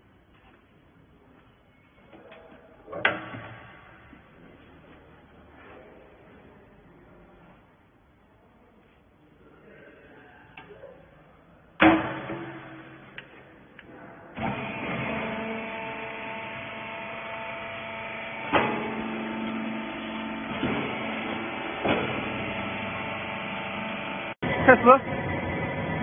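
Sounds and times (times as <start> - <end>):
loud metal bang: 11.8 - 13.2
baler motor and pump humming: 14.3 - 26.0.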